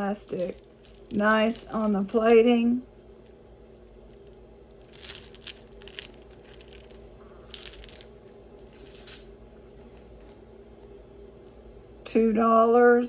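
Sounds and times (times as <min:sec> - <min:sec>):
jewelry clinking and jingling: 0:00.0 - 0:02.5, 0:03.2 - 0:09.4.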